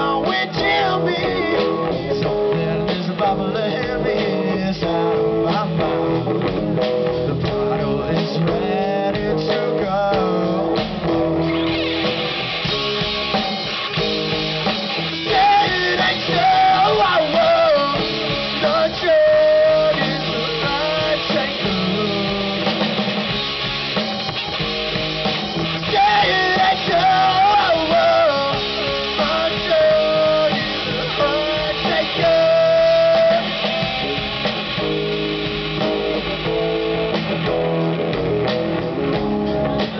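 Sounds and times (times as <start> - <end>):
person singing: 0.0 - 6.4, 7.1 - 11.1, 15.1 - 23.2, 25.6 - 34.3
live rock band playing: 0.0 - 39.9.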